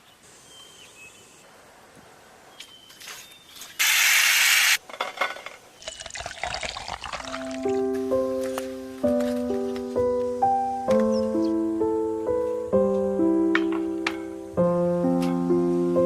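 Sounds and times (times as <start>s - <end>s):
faint bird chirps: 0.0s - 1.5s
loud hiss: 3.8s - 4.8s
water splashing and pouring: 5.8s - 7.8s
piano music: 7.0s - 16.0s.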